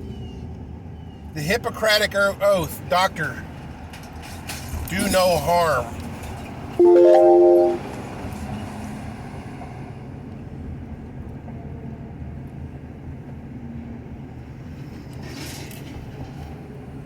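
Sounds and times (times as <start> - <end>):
car road and wind rumble: 2.2 - 6.8.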